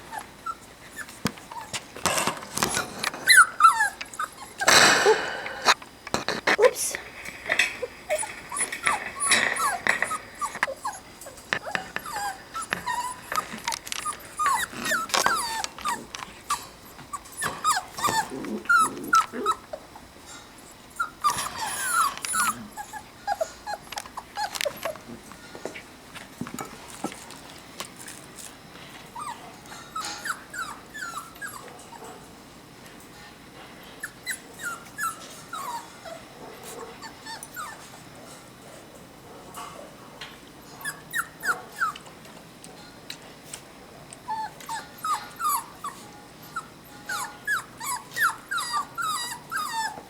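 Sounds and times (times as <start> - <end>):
puppies whimpering and yipping: 0.0 - 1.9, 2.7 - 4.8, 7.5 - 25.1, 29.2 - 32.0, 34.0 - 38.0, 40.8 - 42.1, 44.2 - 50.0
puppies growling: 0.0 - 5.8, 6.5 - 25.4, 28.5 - 32.4, 33.9 - 38.9, 40.6 - 42.3, 44.0 - 50.0.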